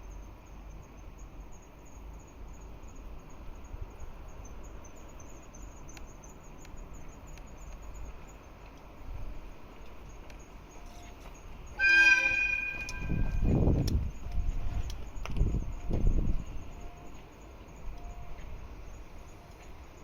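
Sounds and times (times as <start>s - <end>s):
insects chirping: 0.0s - 20.0s
faint ticks: 5.8s - 9.0s, 9.7s - 11.4s, 12.8s - 20.0s
wind on microphone: 12.7s - 16.7s.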